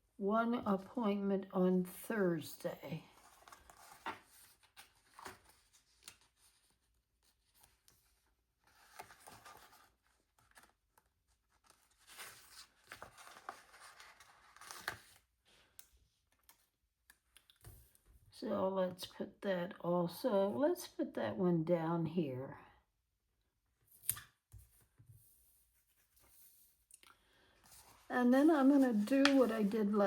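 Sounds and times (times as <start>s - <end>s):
paper sticker sheets rustling: 27.7s - 30.0s.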